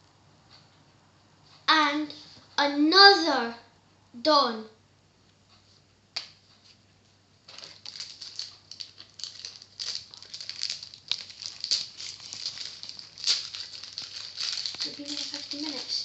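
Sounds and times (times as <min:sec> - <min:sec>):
plastic wrapper crinkling: 0:07.4 - 0:16.0.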